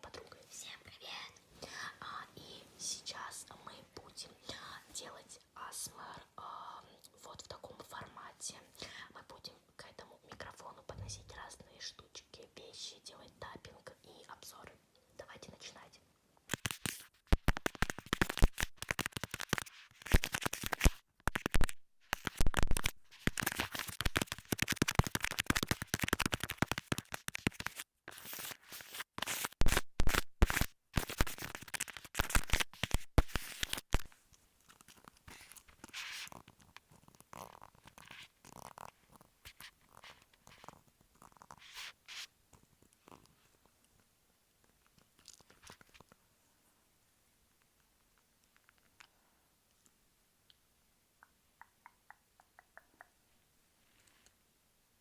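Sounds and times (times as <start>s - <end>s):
sticky tape crinkling and peeling: 16.5s - 40.8s.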